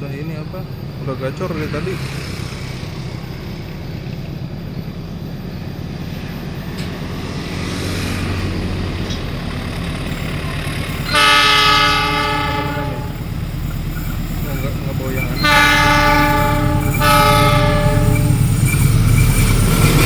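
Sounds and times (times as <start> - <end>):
diesel locomotive engine rumbling: 0.0 - 20.0
locomotive horn blast: 11.0 - 13.4, 15.1 - 18.6.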